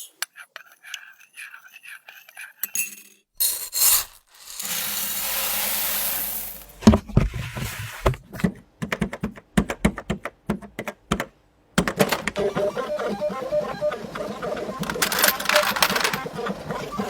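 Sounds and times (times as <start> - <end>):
irregular clicks and knocks: 8.1 - 12.4.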